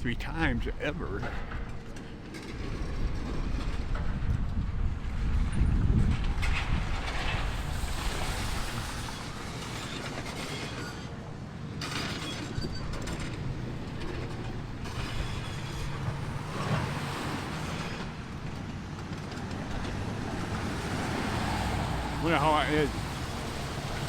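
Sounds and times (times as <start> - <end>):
demolition machinery rumbling: 0.0 - 24.0.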